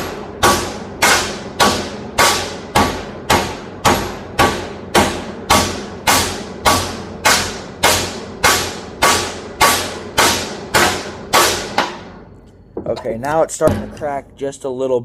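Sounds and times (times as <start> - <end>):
hammer striking chisel on steel: 0.0 - 12.3.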